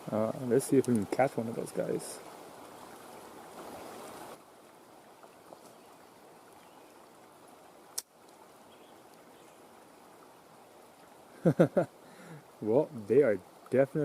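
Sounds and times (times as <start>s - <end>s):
creek water rushing: 0.0s - 14.0s.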